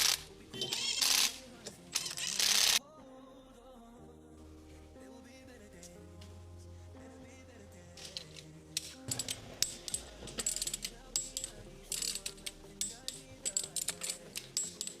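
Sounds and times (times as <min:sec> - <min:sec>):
ratchet wrench clicking: 0:00.0 - 0:02.8, 0:08.0 - 0:15.0
quiet background music: 0:00.0 - 0:15.0
metal tool clinks: 0:08.0 - 0:15.0.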